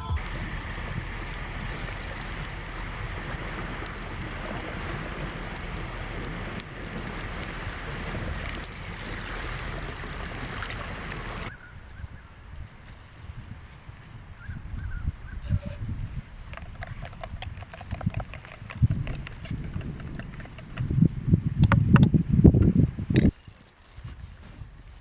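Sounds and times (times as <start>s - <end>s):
water splashing against hull: 0.0s - 11.5s
outdoor background: 0.0s - 25.0s
wind on microphone: 0.0s - 25.0s.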